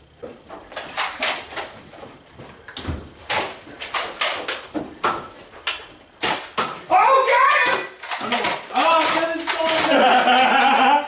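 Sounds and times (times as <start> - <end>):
foam darts clacking and knocking: 2.8 - 11.0.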